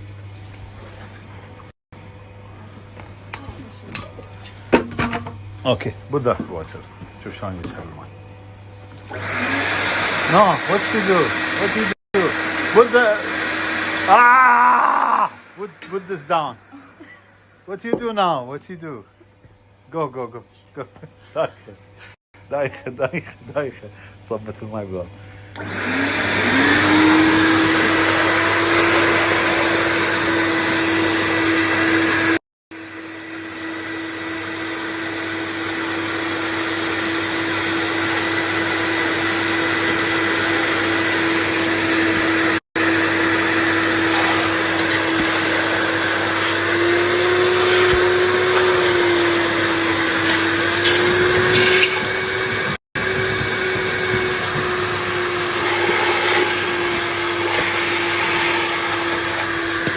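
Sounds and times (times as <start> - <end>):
wet vacuum cleaner whine: 8.8 - 17.7, 24.7 - 59.9.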